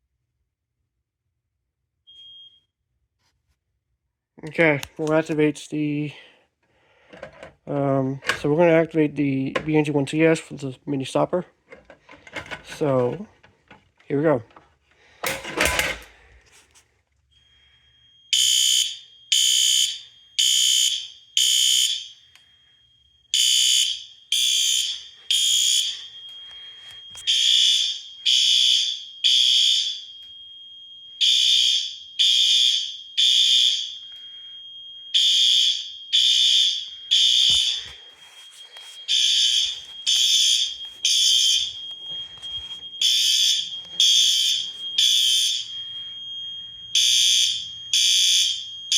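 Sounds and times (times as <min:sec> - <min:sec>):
fire alarm horn blasts: 0:12.1 - 0:13.3, 0:17.3 - 0:48.9
thin steady high tone: 0:25.1 - 0:28.3, 0:33.9 - 0:36.1, 0:36.8 - 0:48.9.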